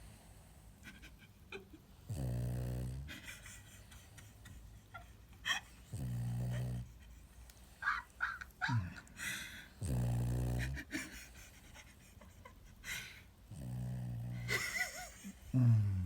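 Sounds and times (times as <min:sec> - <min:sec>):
dog snoring: 0:02.0 - 0:03.4, 0:05.8 - 0:07.0, 0:09.7 - 0:11.2, 0:13.5 - 0:15.0.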